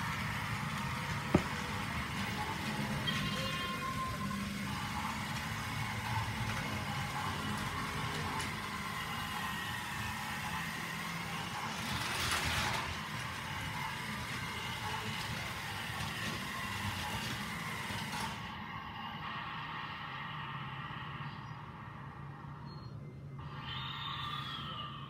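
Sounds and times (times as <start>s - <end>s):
toy train wheels rattling on track: 0.0s - 18.4s
toy train motor whirring: 0.0s - 18.6s.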